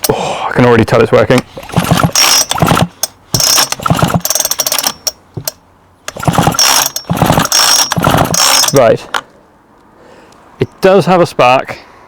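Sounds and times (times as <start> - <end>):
chainsaw recoil starter pulls: 1.3 - 9.0.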